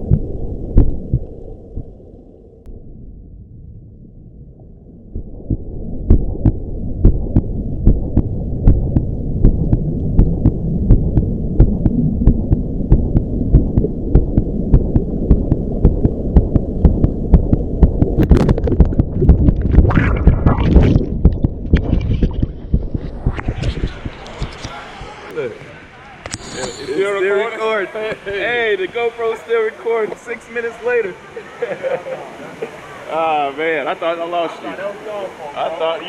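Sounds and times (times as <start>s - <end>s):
muffled underwater waterfall rumble: 0.0s - 25.8s.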